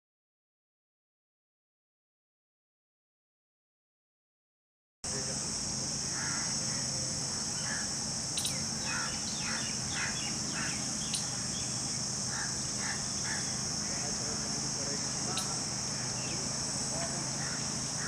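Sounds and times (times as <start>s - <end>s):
high-pitched insect drone: 5.1s - 18.0s
birds giving harsh calls: 5.4s - 18.0s.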